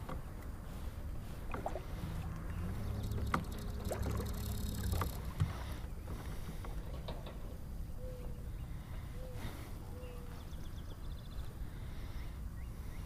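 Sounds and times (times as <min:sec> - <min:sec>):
electric trolling motor humming: 0:01.9 - 0:06.8.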